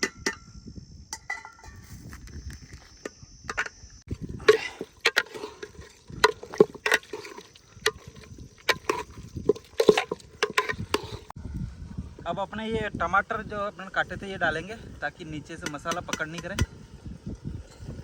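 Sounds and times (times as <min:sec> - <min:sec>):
metal spoon scraping cooking pot: 0:03.5 - 0:11.3.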